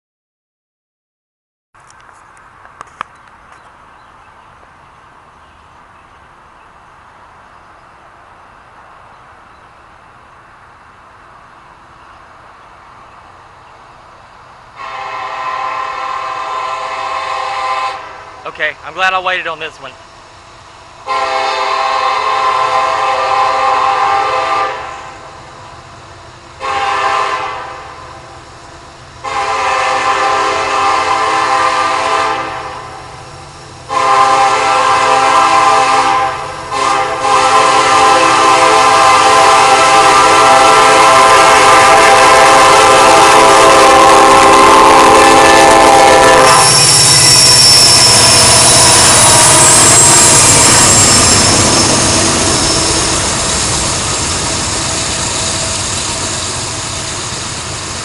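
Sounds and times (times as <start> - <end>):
passing train noise: 1.8 - 58.0
locomotive air horn blasts: 14.8 - 18.6, 21.0 - 25.3, 26.6 - 28.1, 29.2 - 33.2, 33.9 - 53.1.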